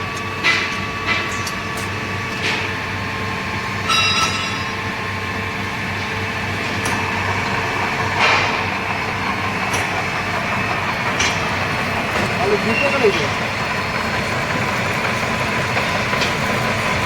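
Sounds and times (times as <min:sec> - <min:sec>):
drilling machine hum: 0:04.7 - 0:17.0.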